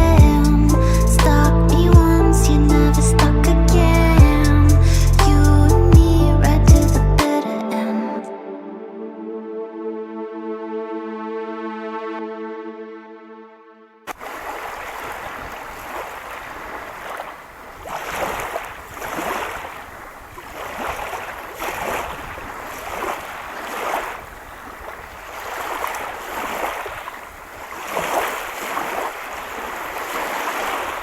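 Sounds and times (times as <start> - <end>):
small waves washing onto beach: 14.1 - 31.0
wind rumbling on microphone: 14.2 - 31.0.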